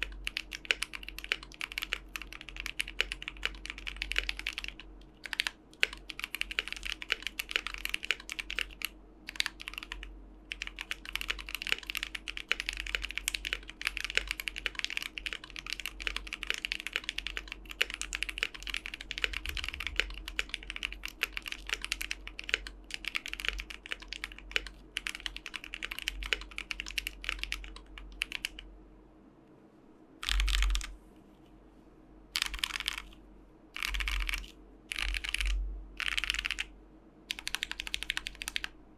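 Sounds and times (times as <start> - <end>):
mechanical keyboard typing: 0.0 - 28.6, 30.2 - 30.9, 32.4 - 33.2, 33.8 - 36.7, 37.3 - 38.7.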